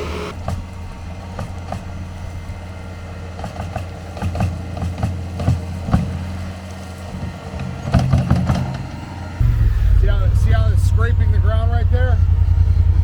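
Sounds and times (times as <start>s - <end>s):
skid steer engine under load: 0.0s - 13.0s
bucket and track clanks: 3.2s - 13.0s.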